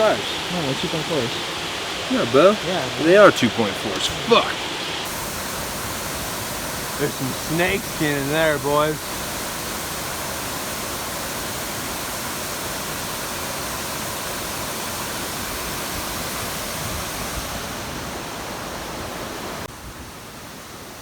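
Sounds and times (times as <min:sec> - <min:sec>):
steady rushing noise: 0:00.0 - 0:12.6
quiet hiss: 0:02.1 - 0:10.5.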